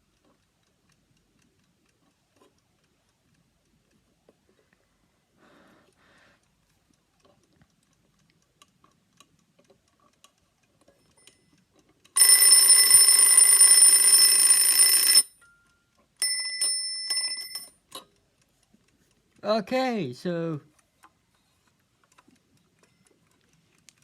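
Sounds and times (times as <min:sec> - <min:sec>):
clock ticking: 0:00.0 - 0:04.8, 0:05.8 - 0:24.0
alarm clock bell ringing: 0:12.2 - 0:17.8.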